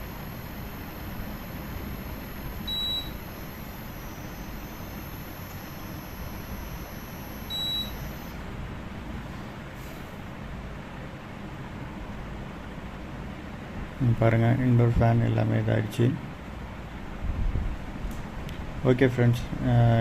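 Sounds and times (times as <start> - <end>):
short high electronic beeps: 0.0 - 8.4
air conditioner compressor running: 0.0 - 20.0.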